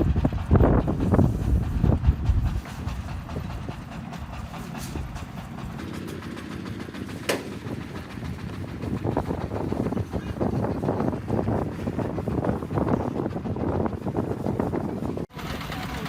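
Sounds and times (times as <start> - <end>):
concrete mixer engine rumbling: 0.0 - 16.0.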